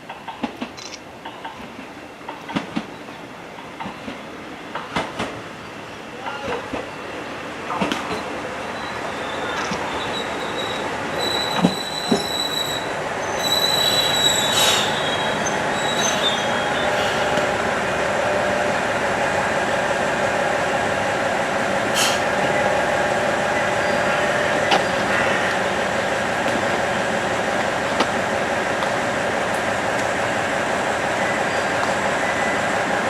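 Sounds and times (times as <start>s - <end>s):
diesel railcar engine and wheels: 0.0s - 33.0s
railcar wheels squealing: 8.1s - 17.4s.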